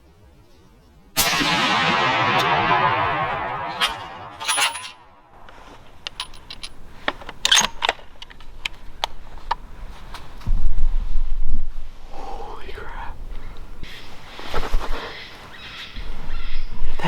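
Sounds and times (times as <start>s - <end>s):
heavy low thump: 1.2s - 5.1s.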